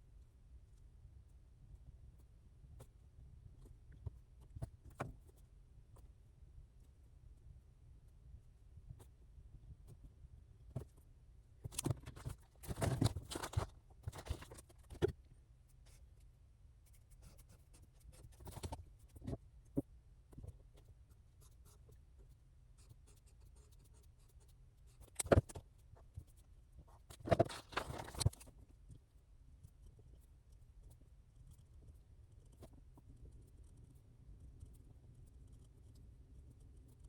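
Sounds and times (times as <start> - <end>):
faint low hum: 0.0 - 37.0
pen scratching on paper: 16.8 - 19.4, 20.4 - 28.4, 29.6 - 37.0.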